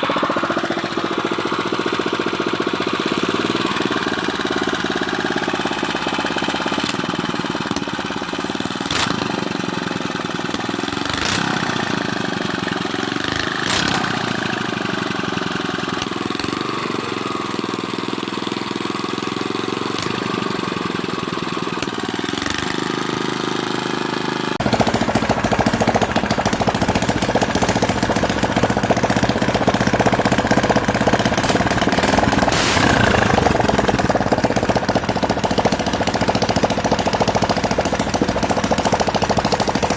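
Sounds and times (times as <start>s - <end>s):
boat engine knocking: 24.6s - 39.9s.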